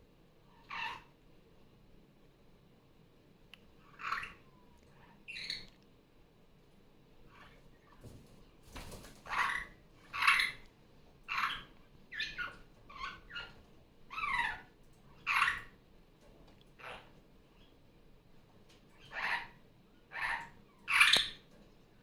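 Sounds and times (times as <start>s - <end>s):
parrot calling: 0.5s - 1.1s, 3.8s - 5.7s, 9.3s - 10.6s, 11.3s - 15.8s, 16.8s - 17.1s, 19.0s - 21.4s.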